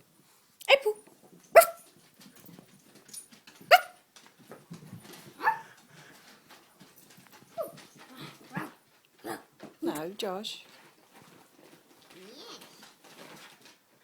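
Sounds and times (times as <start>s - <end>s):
dogs barking: 1.6s - 1.8s, 3.7s - 4.0s, 5.4s - 5.8s.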